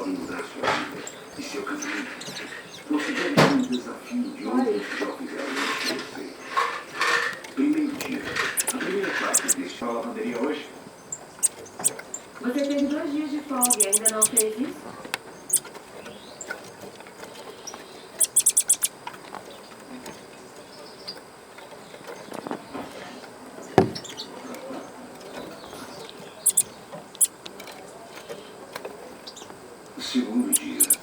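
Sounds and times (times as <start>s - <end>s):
small bird chirping: 8.6s - 9.6s, 11.0s - 12.3s, 13.6s - 14.5s, 15.4s - 16.5s, 17.5s - 18.9s, 26.3s - 27.4s, 30.5s - 31.0s.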